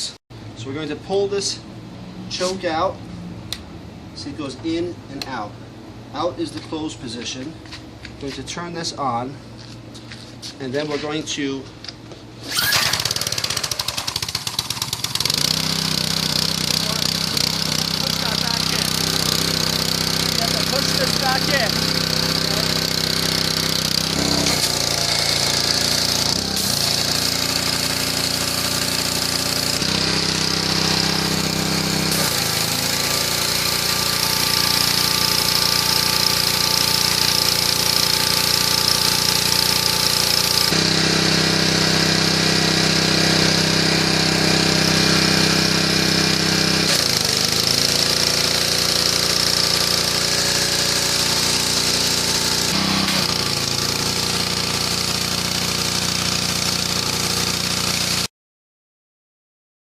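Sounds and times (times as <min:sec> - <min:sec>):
pressure washer engine running: 0:12.4 - 0:58.3.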